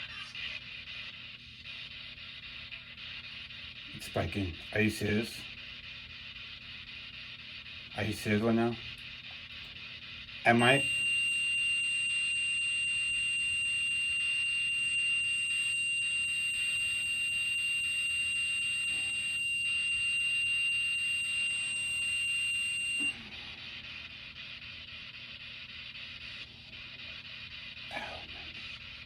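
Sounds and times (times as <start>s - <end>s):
high-pitched sensor alarm tone: 10.5s - 23.8s.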